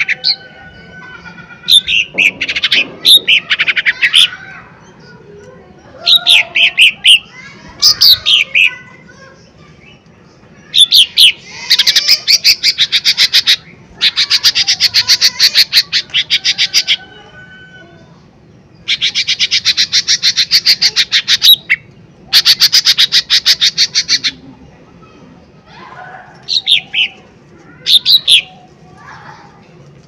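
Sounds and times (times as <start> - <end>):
bird chattering song: 1.6 - 5.3, 6.0 - 17.2, 18.6 - 25.2, 26.4 - 28.7.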